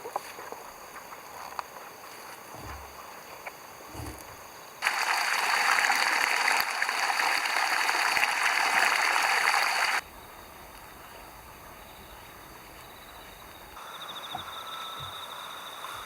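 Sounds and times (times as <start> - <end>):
running water rushing: 4.8 - 10.0.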